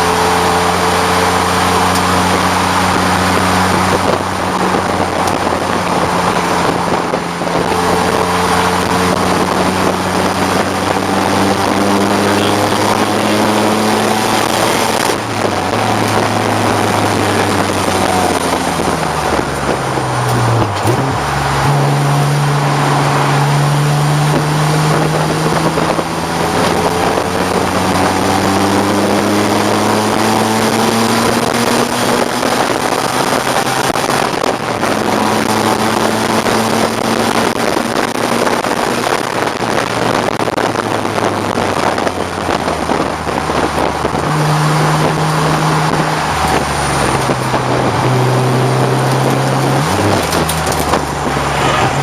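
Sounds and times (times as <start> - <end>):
car engine racing: 0.0 - 52.0.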